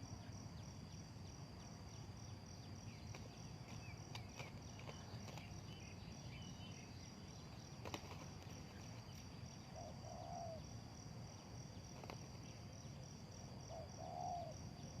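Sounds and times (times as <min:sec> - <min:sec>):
insects trilling: 0:00.0 - 0:15.0
dove cooing: 0:07.8 - 0:10.6, 0:13.7 - 0:14.7.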